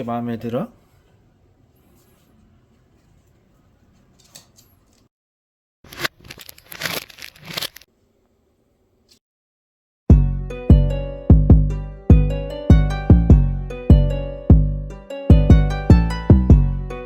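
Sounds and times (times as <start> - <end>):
crinkling handling noise: 5.9 - 8.0.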